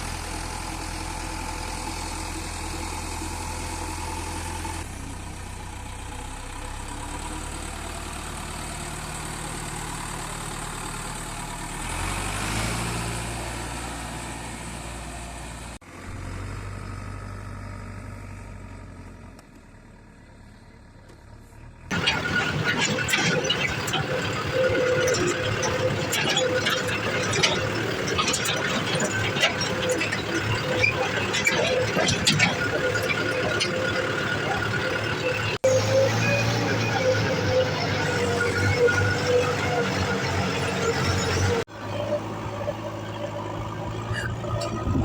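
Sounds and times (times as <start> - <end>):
diesel engines running: 0.0 - 45.0
loud clatter: 21.9 - 35.8.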